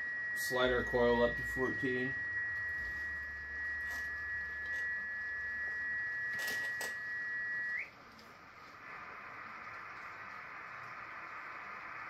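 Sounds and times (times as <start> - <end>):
whistle-like heterodyne tone: 0.0 - 7.9
radio band hiss: 0.0 - 12.0.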